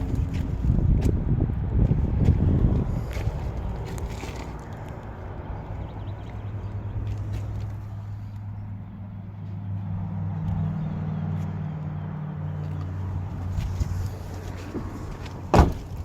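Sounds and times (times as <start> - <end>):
low engine hum: 0.0 - 16.0
loud sharp thump: 15.5 - 15.9.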